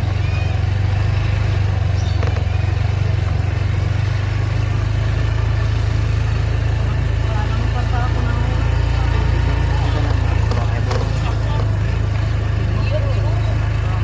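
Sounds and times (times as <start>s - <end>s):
road noise: 0.0s - 14.0s
vehicle engine rumbling: 0.0s - 14.0s
faint clatter: 9.9s - 11.9s.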